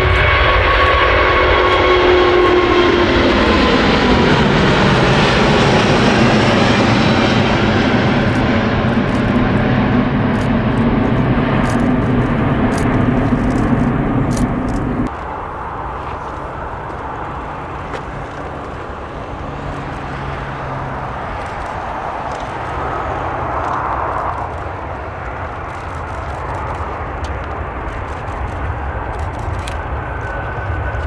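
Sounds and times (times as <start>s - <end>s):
aircraft engine rush: 0.0s - 31.0s.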